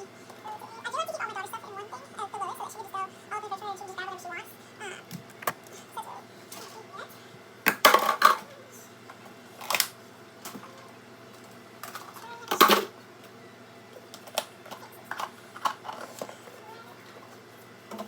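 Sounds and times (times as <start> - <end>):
fridge items clinking and clattering: 7.7 - 8.5, 14.0 - 18.0.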